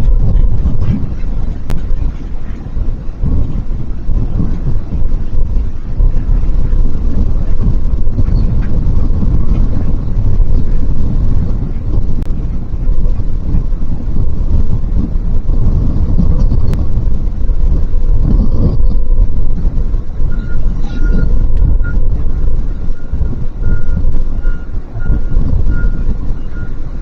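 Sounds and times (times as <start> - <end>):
wind buffeting microphone: 0.0 - 27.0
faint high electronic beeping: 20.3 - 22.0.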